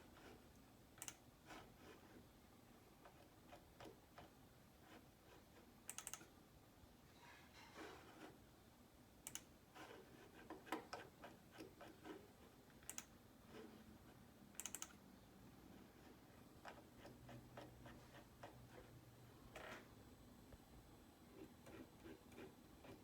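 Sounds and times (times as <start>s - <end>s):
faint computer keyboard typing: 0.0s - 2.2s, 3.0s - 6.4s, 9.2s - 15.1s, 15.7s - 19.9s, 21.3s - 23.0s.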